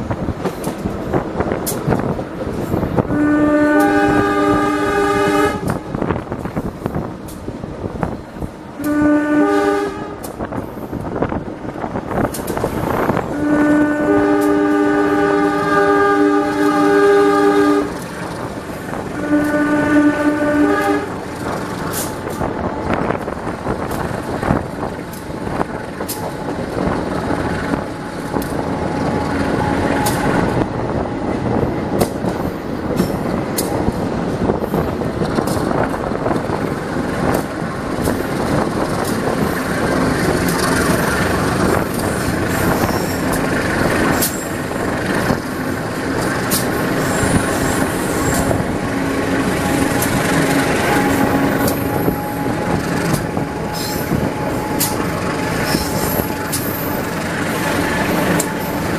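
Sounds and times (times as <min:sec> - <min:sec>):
sharp rail clicks: 0:00.0 - 0:03.1, 0:05.6 - 0:09.0, 0:10.1 - 0:13.3, 0:14.3 - 0:14.9, 0:17.8 - 0:19.7, 0:21.0 - 0:58.9
train wheels rumbling on rails: 0:00.0 - 0:58.9
high-pitched wheel squeals: 0:41.9 - 0:44.7, 0:46.6 - 0:48.6, 0:49.6 - 0:58.9.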